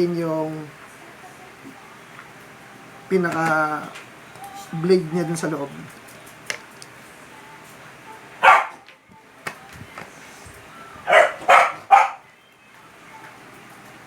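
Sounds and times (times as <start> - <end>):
dog barking: 8.4 - 8.8, 11.1 - 12.3.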